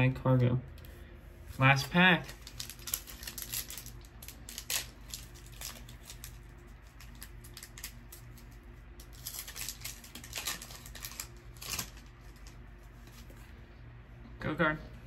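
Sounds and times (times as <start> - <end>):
foil wrapper crinkling and tearing: 1.6 - 13.4.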